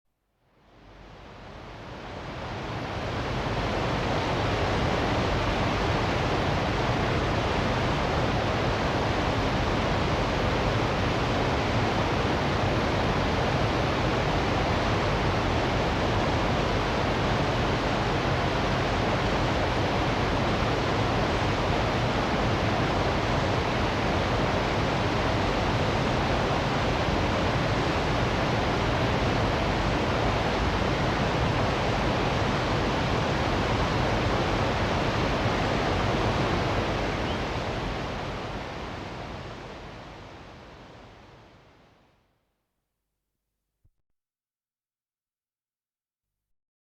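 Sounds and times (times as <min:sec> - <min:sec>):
waterfall rushing: 0:16.4 - 0:39.7.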